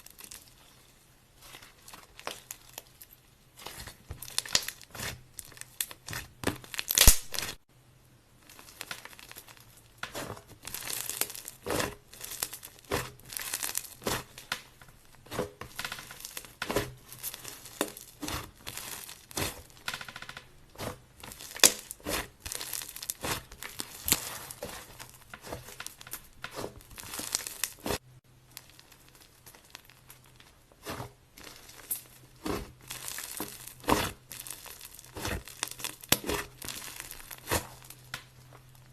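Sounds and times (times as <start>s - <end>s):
slime squeezed by hand crackling: 20.7s - 38.4s.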